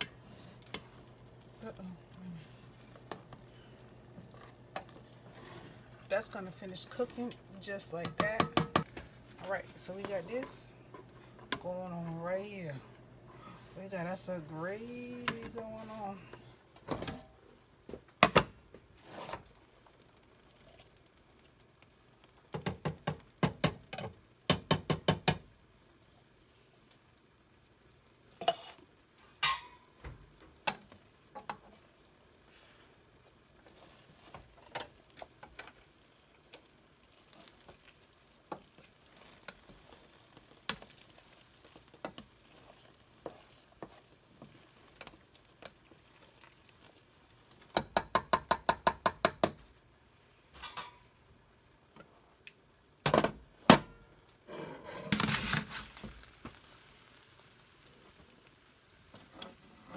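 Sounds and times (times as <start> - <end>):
utensil clinking against pots: 8.0 - 8.9, 29.4 - 29.9.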